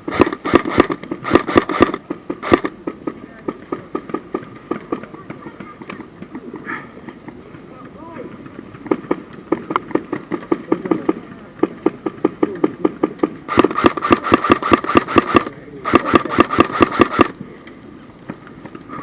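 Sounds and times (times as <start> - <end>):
airsoft gun firing bursts: 0.0 - 5.6, 8.5 - 17.4
sharp clicks: 0.1 - 5.1, 8.8 - 18.9.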